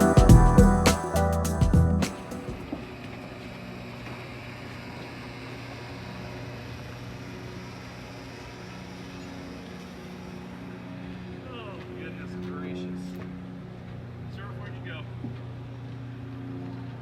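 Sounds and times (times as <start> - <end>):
music: 0.0 - 2.6.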